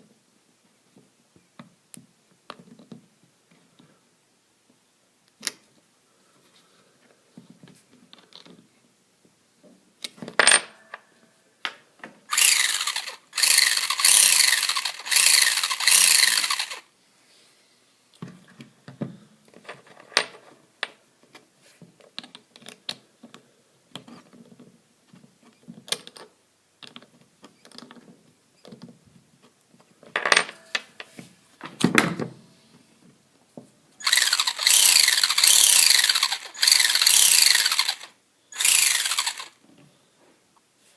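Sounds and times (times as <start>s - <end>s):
grinding ratcheting noise: 12.3s - 16.8s, 34.0s - 39.6s
toy truck drivetrain whining: 12.3s - 16.9s, 34.0s - 39.6s.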